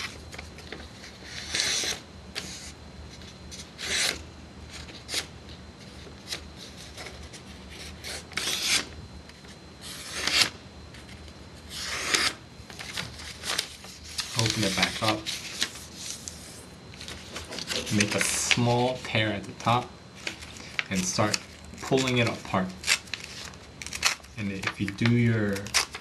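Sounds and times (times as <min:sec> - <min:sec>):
paper being creased: 0:00.0 - 0:02.7, 0:07.8 - 0:08.9, 0:11.7 - 0:18.6.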